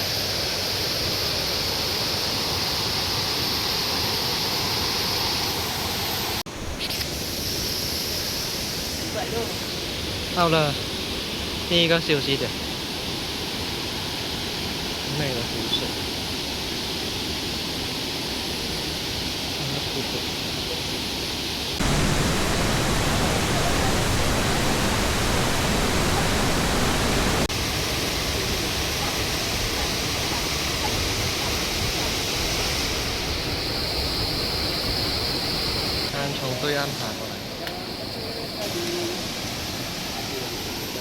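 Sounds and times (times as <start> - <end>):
stream water rushing: 21.8 - 37.6.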